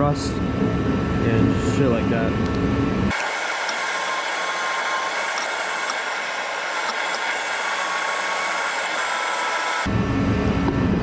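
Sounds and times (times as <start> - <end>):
power tool stripping disc on metal: 3.1 - 9.9.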